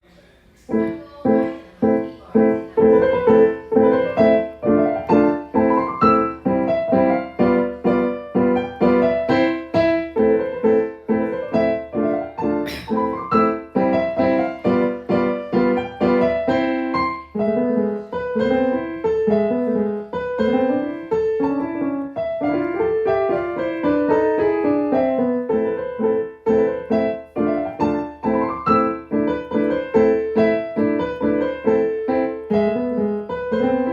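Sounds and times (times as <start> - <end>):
solo piano: 0.6 - 33.9
person coughing: 12.7 - 13.0.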